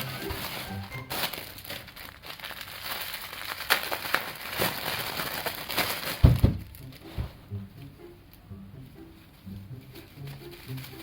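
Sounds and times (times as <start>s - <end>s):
plastic packaging crinkling: 0.0s - 7.2s, 10.0s - 11.0s.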